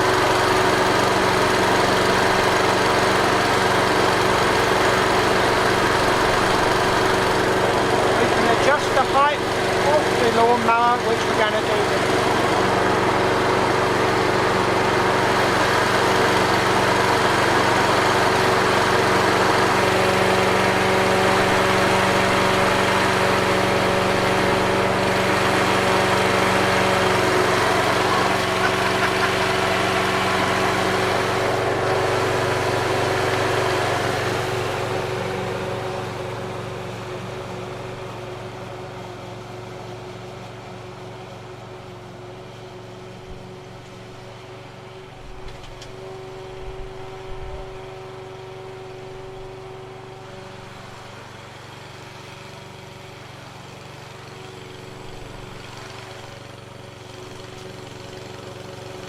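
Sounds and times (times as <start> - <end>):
lawn mower running: 0.0 - 59.0.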